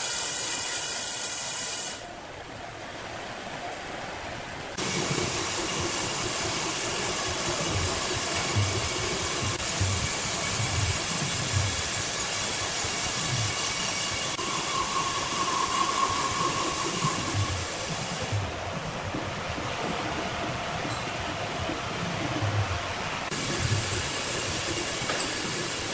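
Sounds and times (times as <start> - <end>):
sawmill machinery hiss and whine: 0.0 - 2.2, 4.8 - 18.6, 23.0 - 25.9
low thumps: 17.4 - 23.4.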